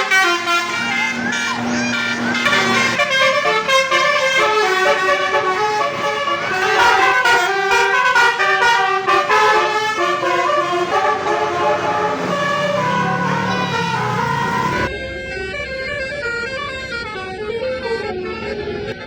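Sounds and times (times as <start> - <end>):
bus horn playing melody: 0.0 - 14.9.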